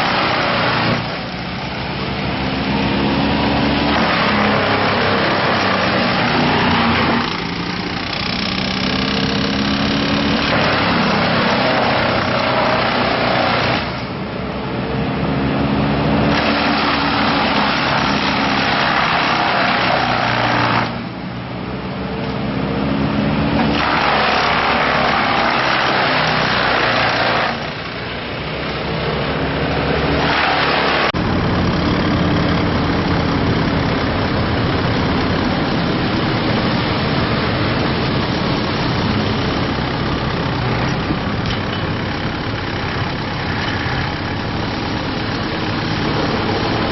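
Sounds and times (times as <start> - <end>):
gas engine running: 30.3 - 46.9.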